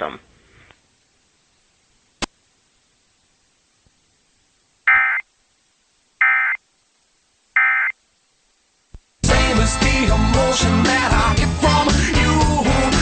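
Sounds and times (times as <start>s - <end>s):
buzzy data bursts: 4.9s - 5.2s, 6.2s - 6.6s, 7.6s - 8.0s.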